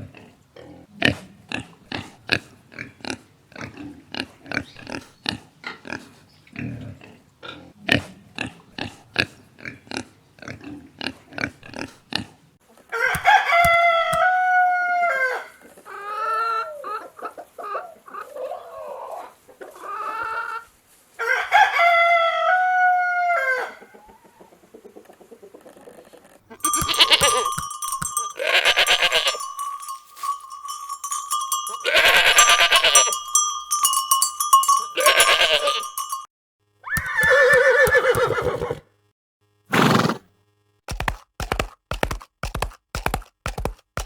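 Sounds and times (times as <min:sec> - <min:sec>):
rooster crowing: 0:12.9 - 0:15.6, 0:21.2 - 0:23.8.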